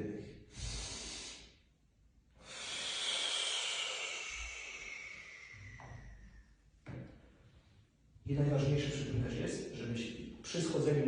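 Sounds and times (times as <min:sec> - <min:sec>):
slow breath out through mouth: 0:02.4 - 0:06.6.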